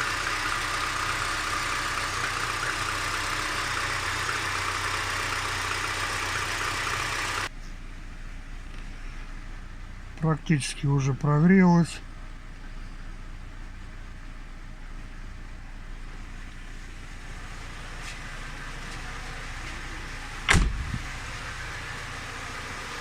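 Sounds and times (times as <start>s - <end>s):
car engine idling: 0.0s - 23.0s
loud thump: 20.5s - 21.0s.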